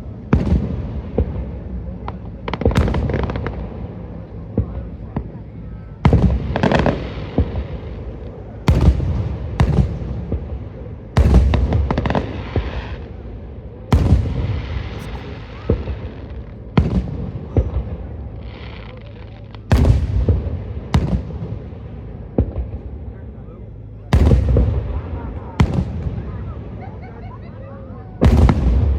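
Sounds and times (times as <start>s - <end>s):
fireworks crackling hiss: 0.0s - 5.3s, 5.9s - 23.2s, 28.2s - 28.9s
fireworks bangs with rumbling echo: 0.0s - 28.9s.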